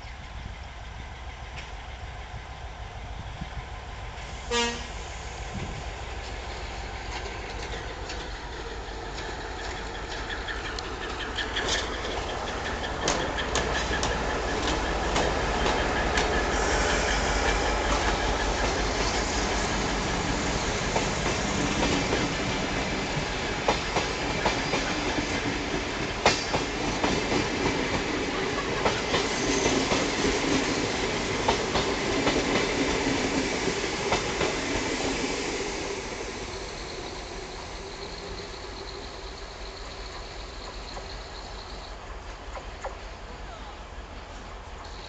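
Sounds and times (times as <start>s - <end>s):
train wheels clattering over rail joints: 5.6s - 35.7s.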